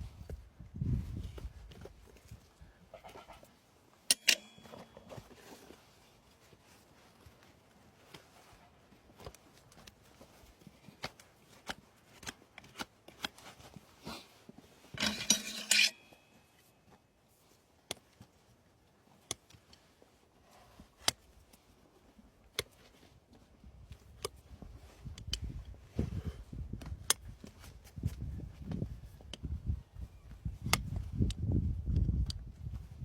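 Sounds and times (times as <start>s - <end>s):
tools clicking and snipping: 4.1s - 5.0s, 15.0s - 16.1s
tools scraping hoof: 4.1s - 5.8s, 14.0s - 16.7s.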